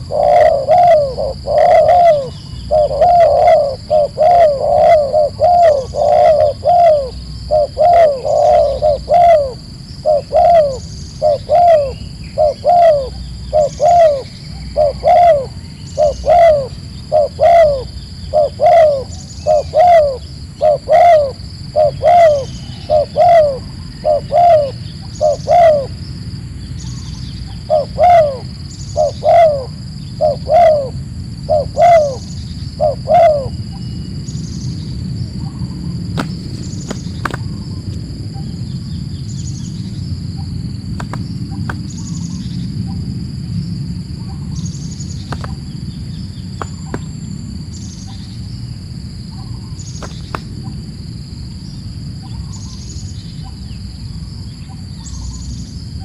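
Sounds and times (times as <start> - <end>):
dove cooing: 0.0 - 26.0, 26.9 - 33.8, 44.2 - 48.2
high insect drone: 0.0 - 56.0.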